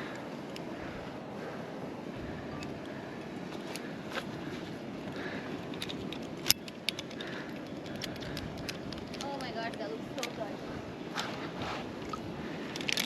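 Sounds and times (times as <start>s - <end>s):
wind: 0.0s - 13.0s
sea noise: 10.1s - 13.0s.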